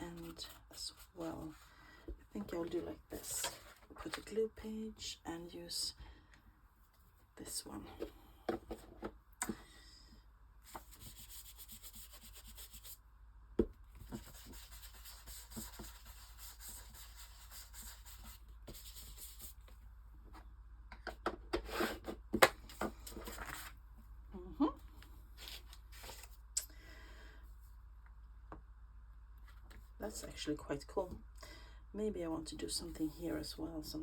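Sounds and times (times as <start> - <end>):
paper being rubbed: 10.7 - 13.0, 14.1 - 19.6.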